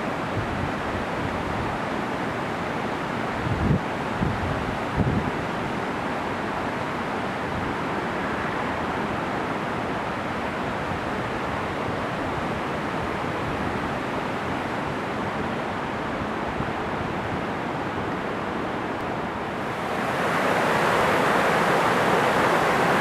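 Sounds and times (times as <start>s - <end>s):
fast-flowing water rushing: 19.2s - 23.0s.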